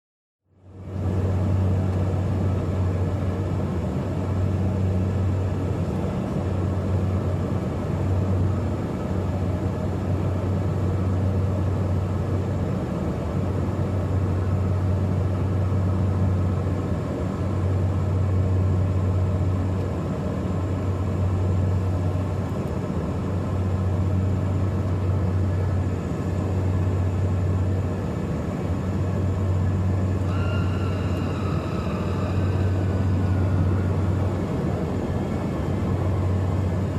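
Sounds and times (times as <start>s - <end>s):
propeller hum in aircraft cabin: 0.5s - 36.9s
high whine: 28.6s - 36.9s.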